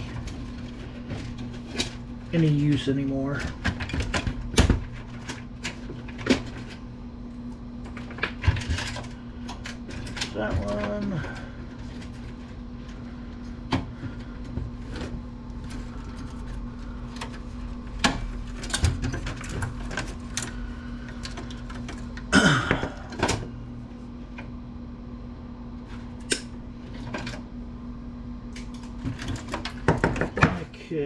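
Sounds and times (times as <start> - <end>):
computer parts clicking and clunking: 0.0 - 6.9, 7.8 - 12.9, 13.7 - 23.5
steady low hum: 0.0 - 31.0.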